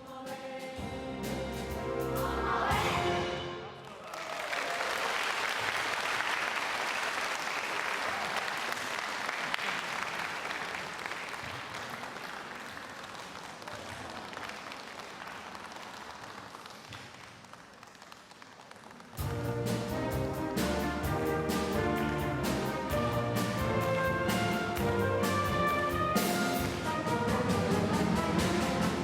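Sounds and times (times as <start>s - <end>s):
audience applauding: 3.8s - 19.4s.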